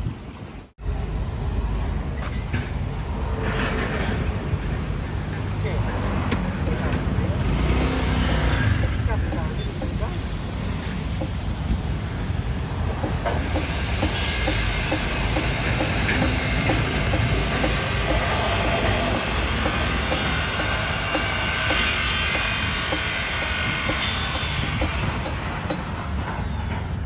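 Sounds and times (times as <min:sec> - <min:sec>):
heavy machinery rumbling: 0:00.8 - 0:27.0
high-pitched machine whine: 0:12.0 - 0:26.8.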